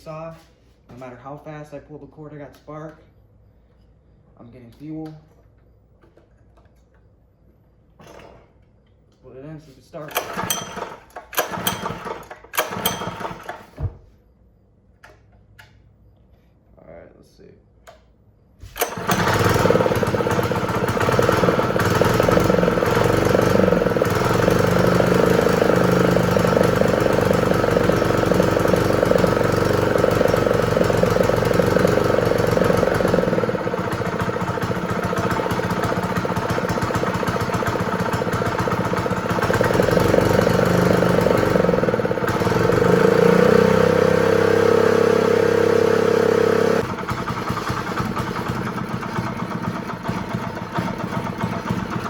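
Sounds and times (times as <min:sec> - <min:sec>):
small engine running: 0:10.1 - 0:13.7, 0:18.8 - 0:52.0.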